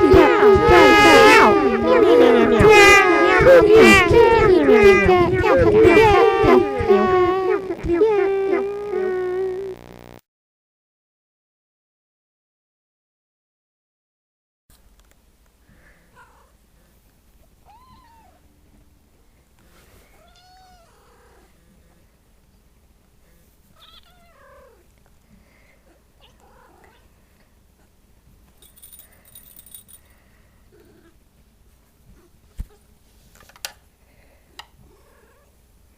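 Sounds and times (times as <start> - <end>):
cat meowing: 17.6 - 18.4, 20.2 - 21.5, 23.8 - 24.8, 26.2 - 27.1.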